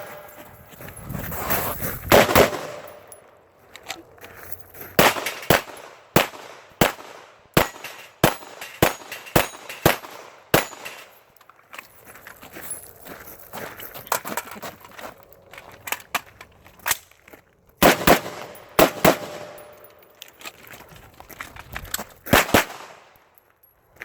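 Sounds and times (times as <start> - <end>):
gunshots: 2.1 - 3.0, 5.0 - 11.1, 17.8 - 19.8, 22.3 - 23.2.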